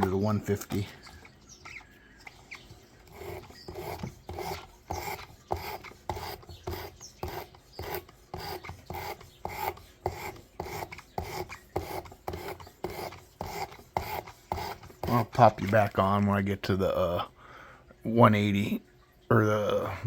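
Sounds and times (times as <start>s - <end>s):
blade rasping on emery cloth: 0.0s - 15.8s.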